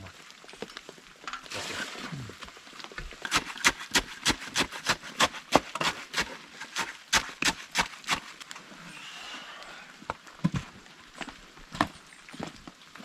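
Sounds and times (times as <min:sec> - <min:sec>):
wet cement being tamped: 0:03.0 - 0:08.5.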